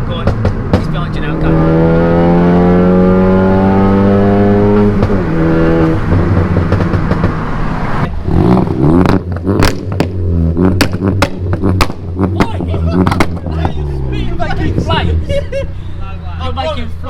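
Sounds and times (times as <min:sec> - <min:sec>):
exhaust pops and bangs: 0:00.0 - 0:01.4, 0:04.7 - 0:13.9
car engine accelerating: 0:00.0 - 0:17.0.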